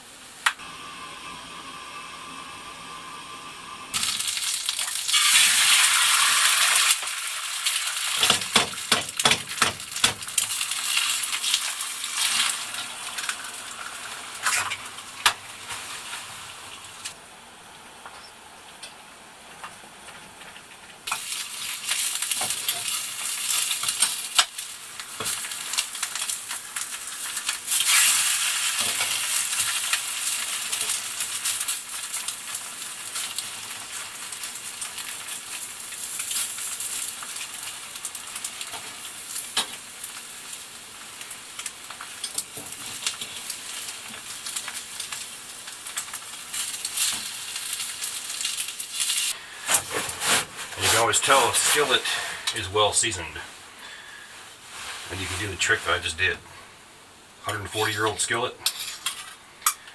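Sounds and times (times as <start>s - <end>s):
eggs sizzling in a skillet: 3.9s - 17.2s, 21.0s - 49.9s.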